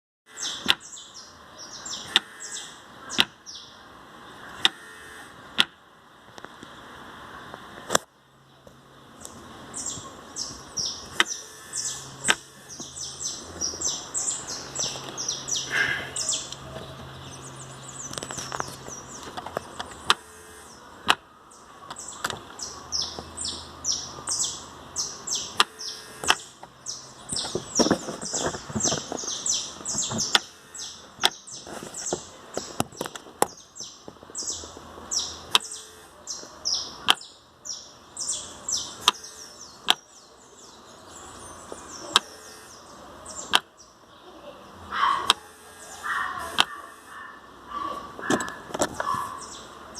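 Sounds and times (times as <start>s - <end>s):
birds chirping: 0.3s - 49.9s
sharp plastic clicks: 11.0s - 11.4s, 12.3s - 12.9s, 18.0s - 20.3s, 21.0s - 21.3s, 25.5s - 26.8s, 37.0s - 37.3s, 39.0s - 40.1s, 42.1s - 42.5s, 43.5s - 43.7s, 45.2s - 45.6s, 46.4s - 46.8s.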